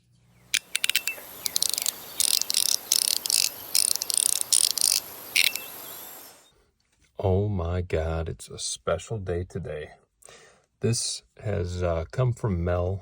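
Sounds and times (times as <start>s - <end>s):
fidget toy clicking and rattling: 0.5s - 5.7s.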